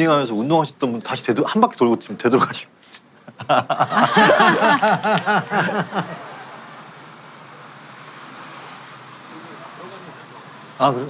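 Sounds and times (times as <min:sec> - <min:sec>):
outdoor ambient hum: 0:00.0 - 0:11.0.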